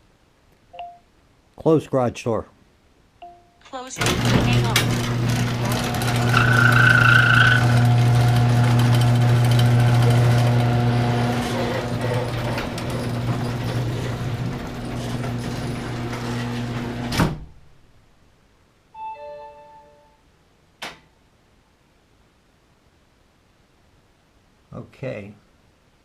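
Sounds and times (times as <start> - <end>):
garage door opener motor humming: 4.0 - 17.3
garage door clunk: 4.0 - 17.6.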